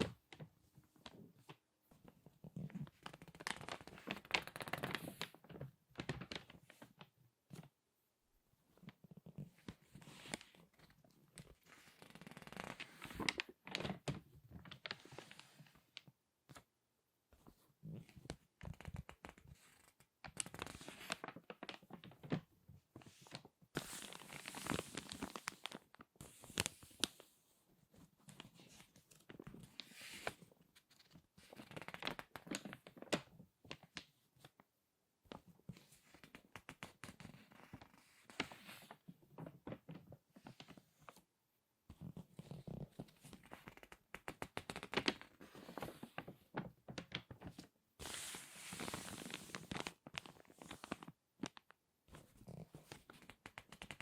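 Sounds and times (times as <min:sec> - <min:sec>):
magazine pages crinkling: 0:03.0 - 0:06.8, 0:23.3 - 0:27.2, 0:29.1 - 0:33.2, 0:43.0 - 0:54.0.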